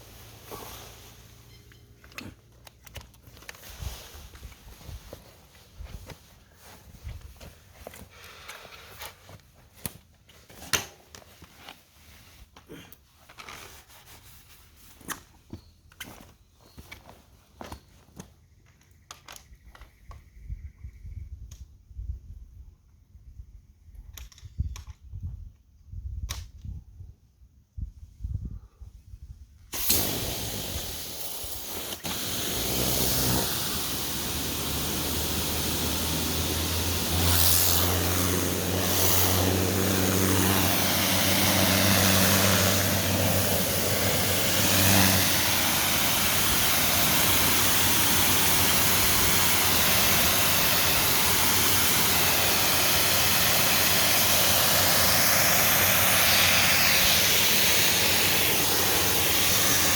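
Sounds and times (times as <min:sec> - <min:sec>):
pressure washer spraying water: 0:29.8 - 0:59.9
motor hum: 0:31.9 - 0:47.6.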